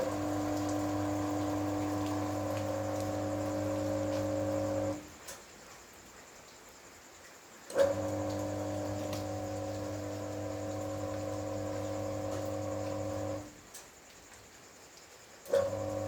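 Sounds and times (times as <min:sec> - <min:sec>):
electric motor humming: 0:00.0 - 0:05.0, 0:07.8 - 0:13.5.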